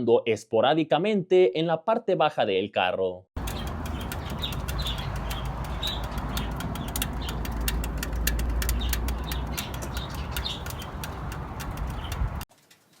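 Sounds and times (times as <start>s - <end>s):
birds chirping: 3.4s - 12.5s
exhaust ticking as it cools: 3.4s - 12.5s.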